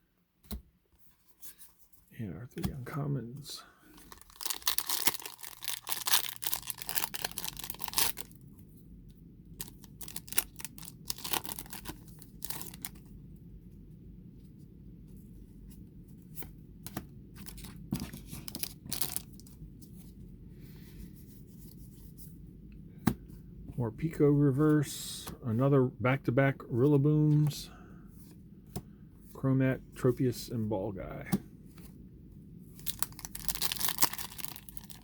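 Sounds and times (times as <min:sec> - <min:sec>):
foil wrapper tearing: 0:04.0 - 0:08.4, 0:09.6 - 0:13.0, 0:18.5 - 0:19.4, 0:32.8 - 0:35.0
cards clicking and rustling: 0:09.6 - 0:13.0.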